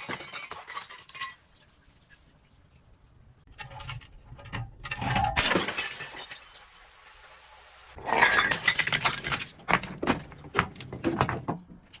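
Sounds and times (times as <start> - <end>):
glass bottles crushing and breaking: 0.0 - 1.9, 3.8 - 6.8, 8.0 - 11.6.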